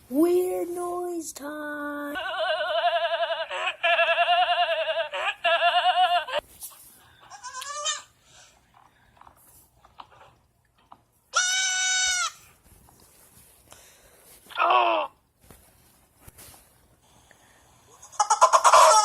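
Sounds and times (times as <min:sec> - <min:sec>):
person making silly noises: 0:14.5 - 0:15.2.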